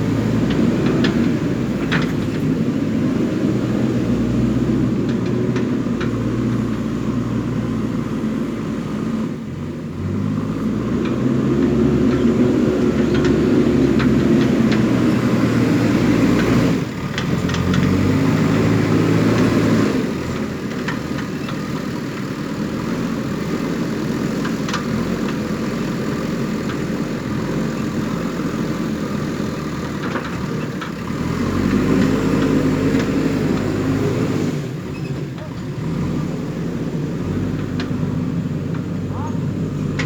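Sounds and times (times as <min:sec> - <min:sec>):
diesel engine working under load: 0:00.0 - 0:40.0.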